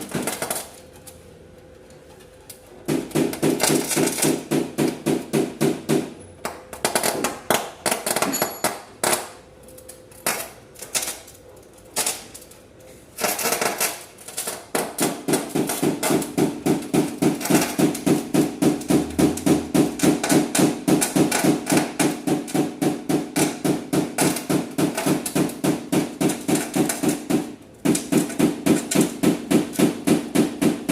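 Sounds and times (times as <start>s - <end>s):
hammer tapping on car panel: 2.9s - 6.1s.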